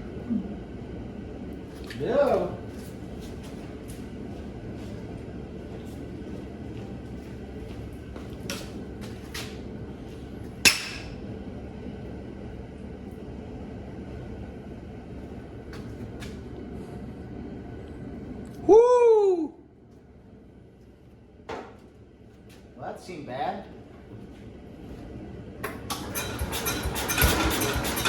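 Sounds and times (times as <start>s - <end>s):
engine running with low rumble: 0.0s - 28.0s
single-cylinder engine running: 25.6s - 28.0s.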